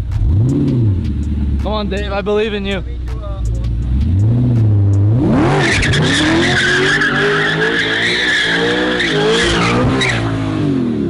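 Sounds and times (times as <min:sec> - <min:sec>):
car engine revving: 0:00.0 - 0:11.0
tyres squealing: 0:05.5 - 0:10.3.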